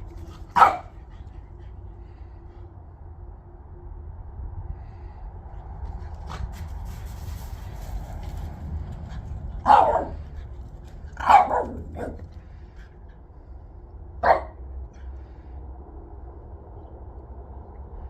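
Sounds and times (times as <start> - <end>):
dog barking: 0.6 - 1.0, 9.6 - 10.2, 11.2 - 12.2, 14.2 - 14.6.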